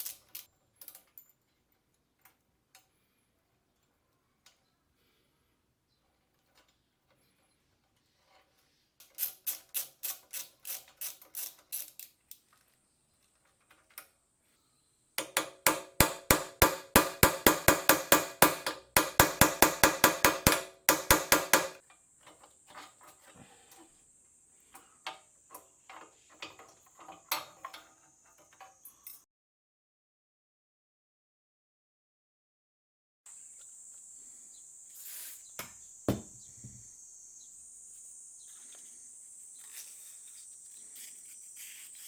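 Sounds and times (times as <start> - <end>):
metallic clicking of hand tool: 0.0 - 1.4, 8.0 - 12.5, 15.2 - 23.9, 24.7 - 29.2.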